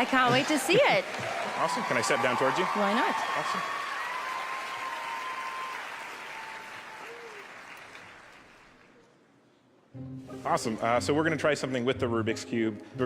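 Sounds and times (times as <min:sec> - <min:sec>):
audience applauding: 0:00.0 - 0:09.0.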